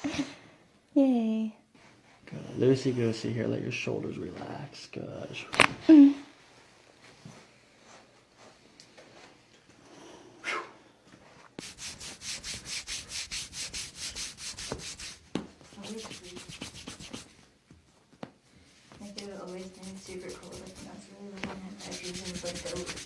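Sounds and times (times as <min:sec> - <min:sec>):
hands rubbing over body: 0:11.6 - 0:17.4, 0:19.0 - 0:23.0.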